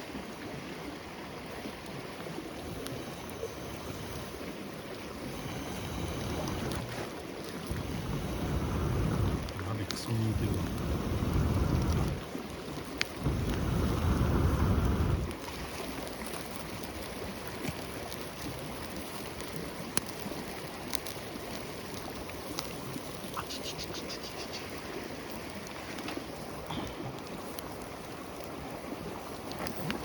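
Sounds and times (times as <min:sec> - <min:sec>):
wind buffeting microphone: 0:07.6 - 0:12.3, 0:13.1 - 0:18.0
outdoor hiss: 0:13.2 - 0:15.3.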